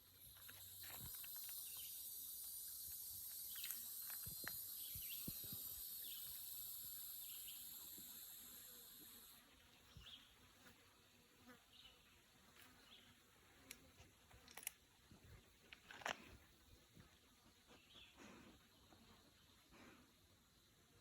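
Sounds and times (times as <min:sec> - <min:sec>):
insects droning: 0:00.0 - 0:10.3.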